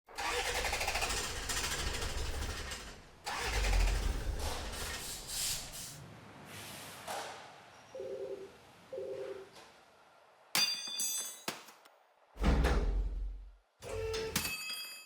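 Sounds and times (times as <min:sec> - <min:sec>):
car engine cranking and starting: 0:00.1 - 0:05.8.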